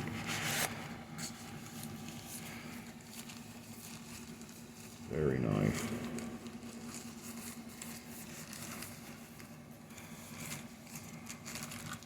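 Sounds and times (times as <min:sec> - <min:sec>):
steady low hum: 0:00.0 - 0:12.0
packaging rustling and clicking: 0:10.3 - 0:12.0.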